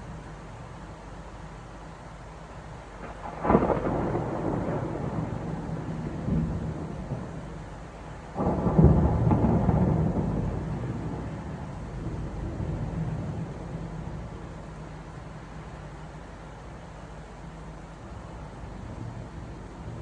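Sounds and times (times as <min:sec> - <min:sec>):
rain hiss: 0:00.0 - 0:20.0
thunder rumbling: 0:03.0 - 0:15.3.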